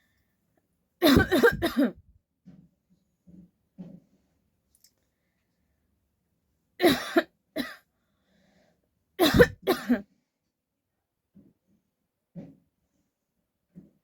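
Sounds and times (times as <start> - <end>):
person coughing: 1.0 - 2.0, 6.8 - 7.8, 9.2 - 10.0.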